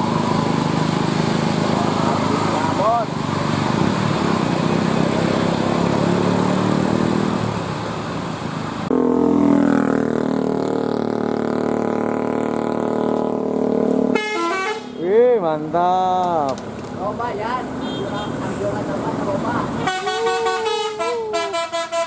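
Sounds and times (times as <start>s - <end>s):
bus engines roaring: 0.0s - 22.0s
road noise: 0.0s - 22.0s
multi-tone melody horn: 14.1s - 15.0s, 19.8s - 22.0s.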